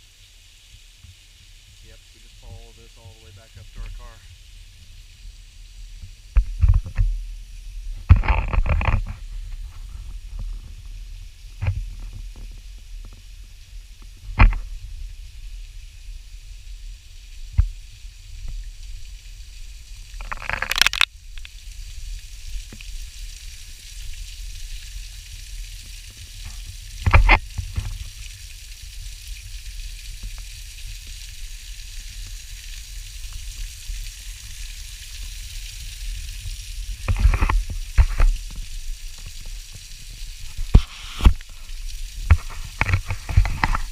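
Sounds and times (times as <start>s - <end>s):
muffled rushing water: 0.0s - 43.9s
camera housing knocks and bumps: 20.2s - 21.1s
camera housing scrape: 20.2s - 21.5s, 40.7s - 41.4s.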